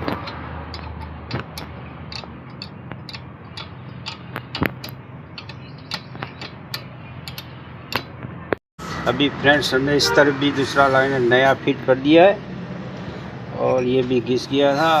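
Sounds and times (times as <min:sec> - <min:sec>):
wrench clicking on bolt: 0:00.0 - 0:08.1.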